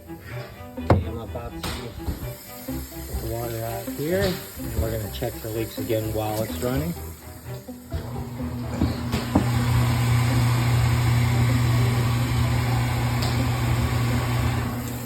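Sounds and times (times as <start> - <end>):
tap water running: 0.8 - 15.0
garbage disposal motor hum: 7.9 - 15.0.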